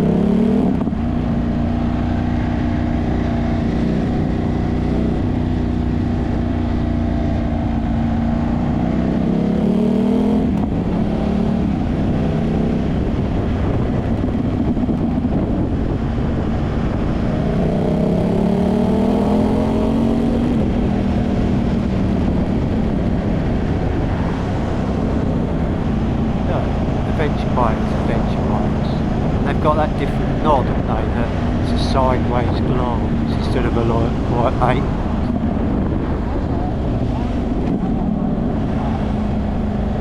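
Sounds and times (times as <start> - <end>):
motorcycle engine accelerating: 0.0 - 40.0
engine note dropping at upshift: 16.9 - 40.0.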